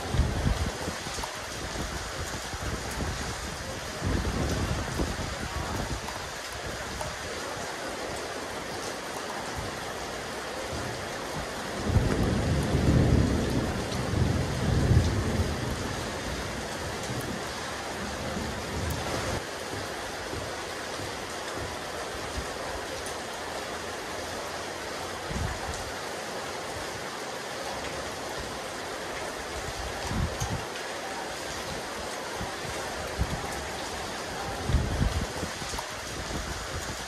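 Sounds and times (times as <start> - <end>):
rain falling on a rooftop: 0.0 - 37.0.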